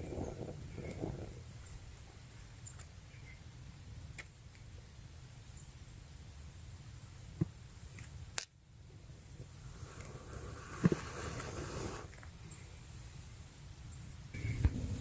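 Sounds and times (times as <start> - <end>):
low rumble: 14.4 - 15.0.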